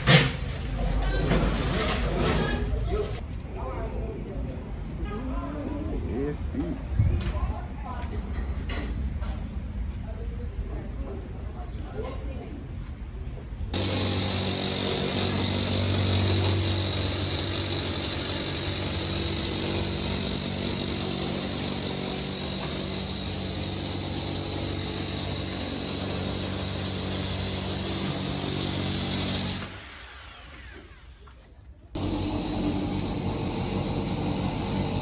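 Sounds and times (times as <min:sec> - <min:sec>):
power tool motor whining: 0:13.8 - 0:31.2, 0:32.0 - 0:35.0.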